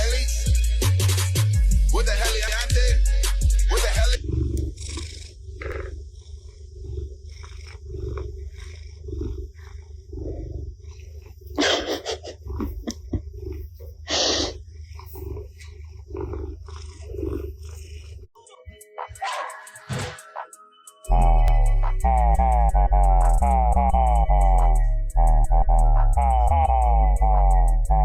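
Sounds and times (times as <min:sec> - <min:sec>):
animal rumbling: 0:01.8 - 0:18.4, 0:21.1 - 0:28.0
animal hissing bursts: 0:03.7 - 0:12.7, 0:13.4 - 0:18.1.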